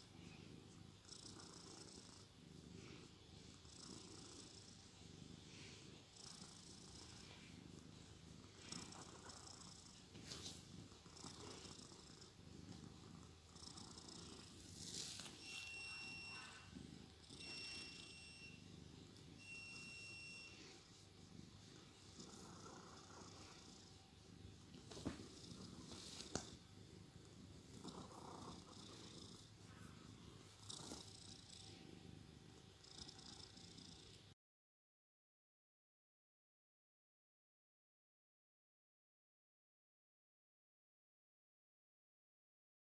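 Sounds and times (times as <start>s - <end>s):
cat snoring softly: 0.0s - 34.4s.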